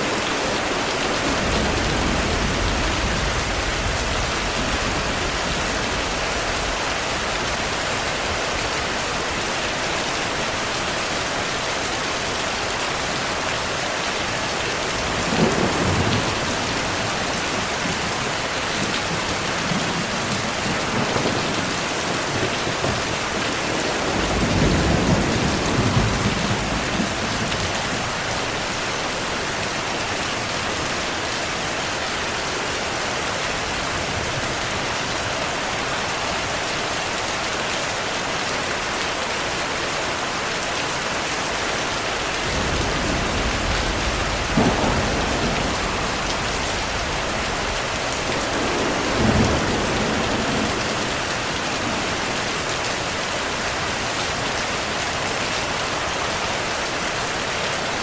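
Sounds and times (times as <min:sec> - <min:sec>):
thunder rumbling: 0:00.0 - 0:09.0, 0:14.9 - 0:28.8, 0:42.2 - 0:53.2
heavy rain falling: 0:00.0 - 0:58.0.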